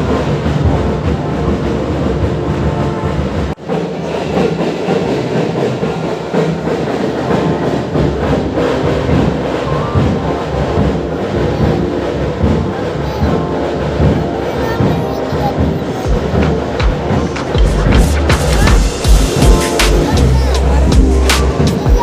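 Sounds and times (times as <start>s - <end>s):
background music with held tones: 6.6s - 22.0s
dense low rumble: 16.1s - 21.6s.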